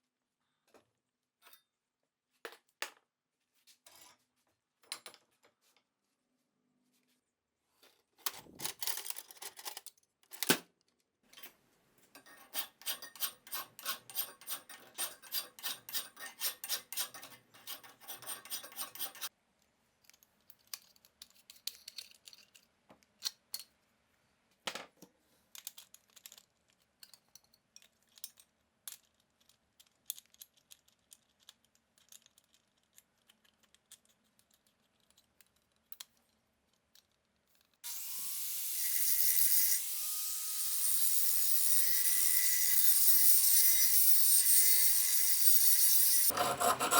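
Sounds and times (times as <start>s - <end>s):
rhythmic scraping on metal: 12.2s - 19.3s, 41.4s - 46.9s.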